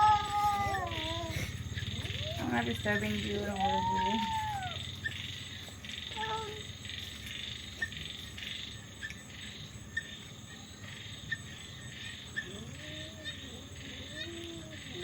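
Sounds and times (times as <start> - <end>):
low cat cry: 0.0 - 2.4
frogs calling: 0.0 - 15.0
insects chirring: 0.0 - 15.0.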